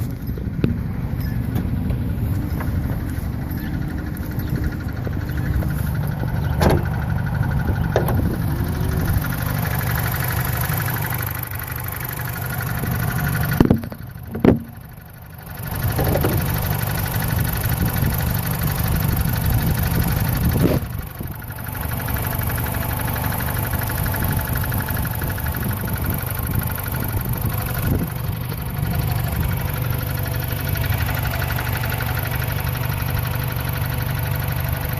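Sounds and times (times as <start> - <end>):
car engine running with rattle: 0.0 - 34.9
sharp knocks: 13.6 - 14.8.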